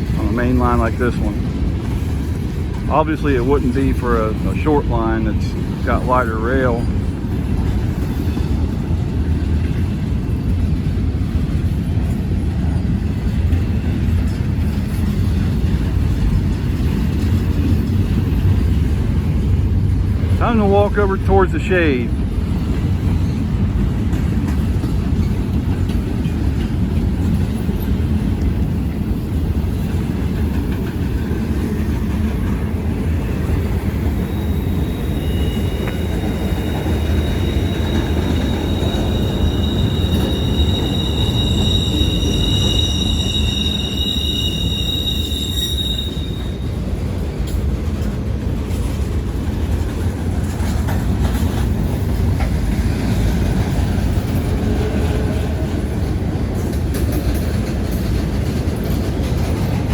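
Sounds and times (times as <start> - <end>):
freight train cars rumbling: 0.0 - 59.9
high wheel squeal: 33.6 - 46.9.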